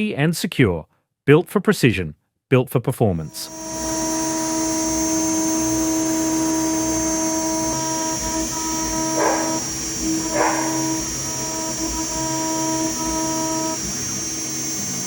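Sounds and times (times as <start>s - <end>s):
router spindle high whine: 3.2s - 15.0s
cutting noise bursts: 3.3s - 15.0s.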